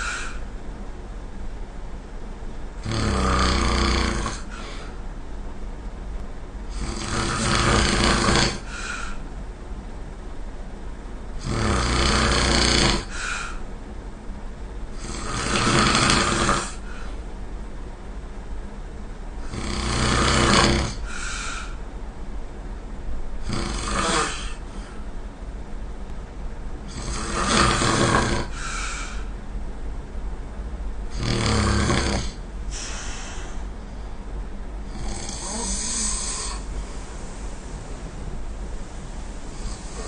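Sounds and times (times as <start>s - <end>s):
person snoring: 2.8s - 4.9s, 6.7s - 9.2s, 11.4s - 13.6s, 15.0s - 17.1s, 19.4s - 21.8s, 23.4s - 25.0s, 26.9s - 29.3s, 31.1s - 33.5s, 34.9s - 37.0s, 39.5s - 40.0s.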